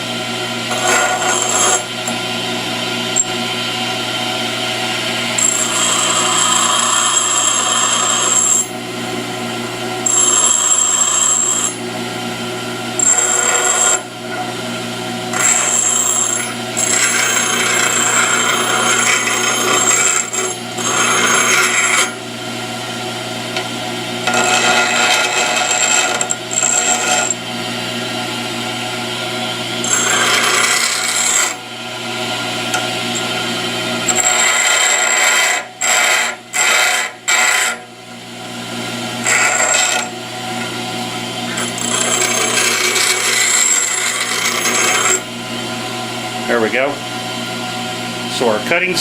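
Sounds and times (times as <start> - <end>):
grinder motor hum: 0.0 - 49.0
tool bit grinding on wheel: 0.7 - 2.2, 5.4 - 8.8, 10.0 - 11.8, 13.0 - 14.1, 15.3 - 22.2, 24.2 - 27.4, 29.8 - 31.7, 34.0 - 37.8, 39.2 - 40.1, 41.5 - 45.3.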